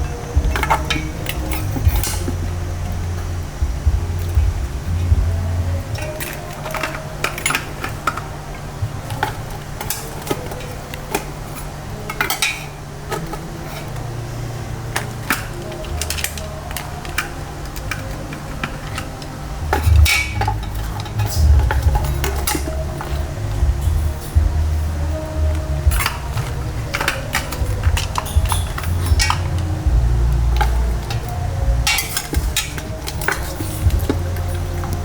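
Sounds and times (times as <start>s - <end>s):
low rumble: 0.0s - 6.2s, 19.4s - 35.0s
utensils and dishes clinking: 0.0s - 35.0s.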